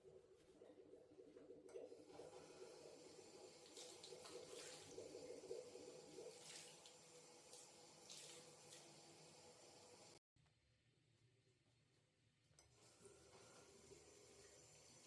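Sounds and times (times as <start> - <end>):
tap water running into sink: 1.6 - 10.2, 12.8 - 15.0.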